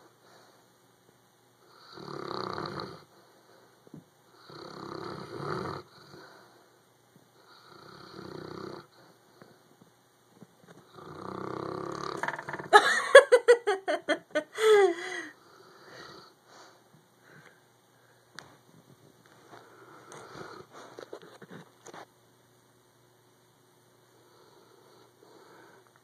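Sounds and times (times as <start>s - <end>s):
dog snoring: 1.6s - 3.1s, 4.3s - 6.4s, 7.4s - 9.0s, 10.8s - 12.2s, 15.4s - 16.4s, 19.8s - 20.9s.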